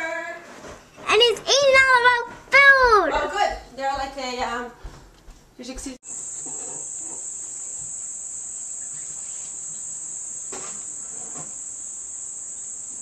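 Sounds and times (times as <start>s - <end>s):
insect chorus drone: 6.0s - 13.0s.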